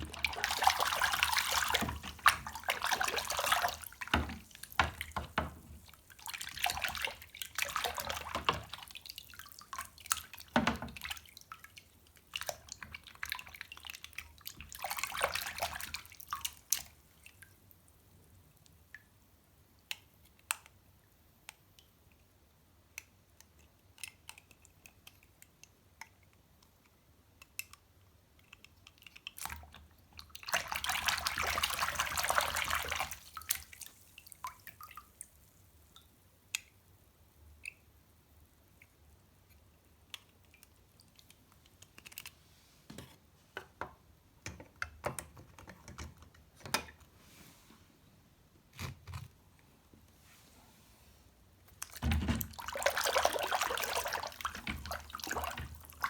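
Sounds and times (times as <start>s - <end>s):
water splashing and running: 0.0s - 11.2s, 30.5s - 34.9s, 51.8s - 56.0s
water dripping: 0.0s - 17.7s, 28.9s - 36.8s, 51.7s - 56.0s.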